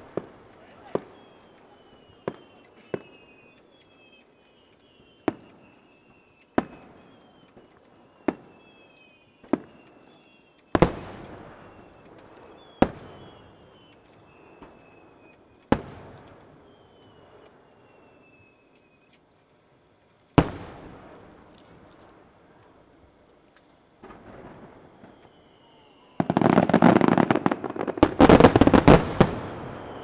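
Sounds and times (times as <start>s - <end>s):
crackling hiss: 0.0s - 30.0s
firework shells bursting: 20.4s - 30.0s.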